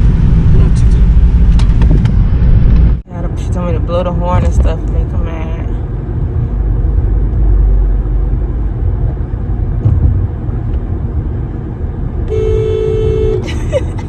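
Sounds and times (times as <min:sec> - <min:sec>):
road rumble inside moving car: 0:00.0 - 0:14.0
car horn: 0:12.2 - 0:13.6.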